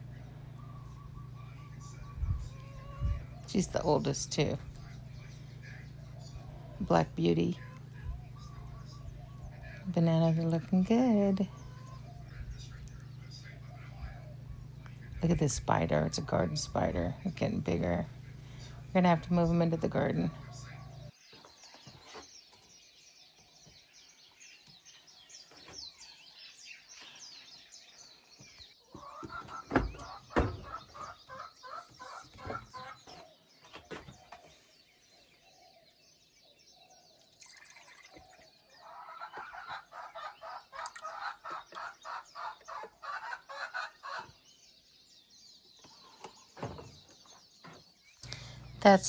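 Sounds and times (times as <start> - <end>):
hens clucking: 0.0 - 21.1, 28.9 - 34.7, 38.8 - 44.4
songbirds chirping: 0.0 - 49.0
sharp knocks: 29.2 - 31.0.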